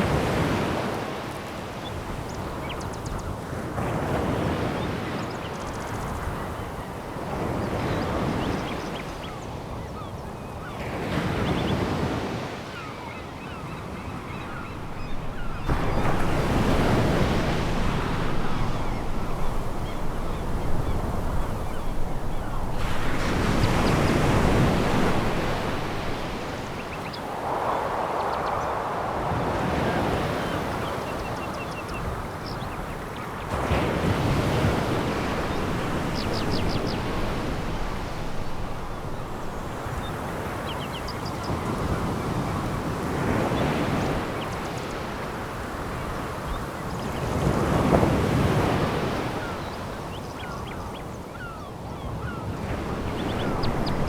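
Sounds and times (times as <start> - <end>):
waves on pebble beach: 14.3 - 31.7, 33.4 - 49.9, 52.2 - 54.0.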